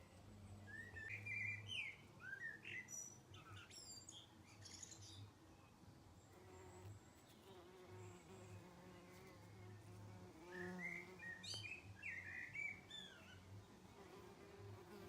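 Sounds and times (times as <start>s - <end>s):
small bird chirping: 10.4s - 13.6s
wasp buzzing: 13.8s - 15.0s.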